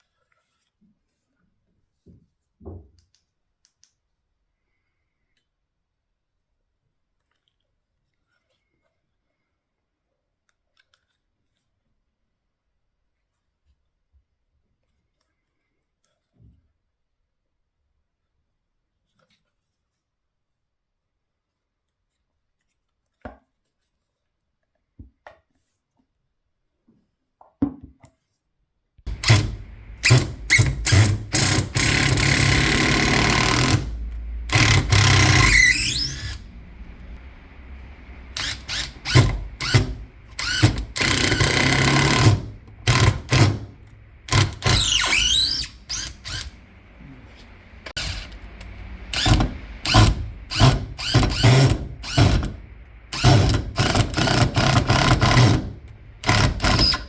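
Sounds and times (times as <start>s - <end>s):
impact driver motor spinning: 29.1s - 37.2s, 38.0s - 46.6s, 47.2s - 57.0s.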